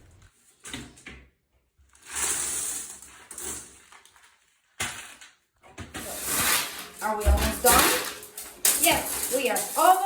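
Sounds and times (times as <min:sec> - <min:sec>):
glass shards being scraped: 0:06.0 - 0:10.0.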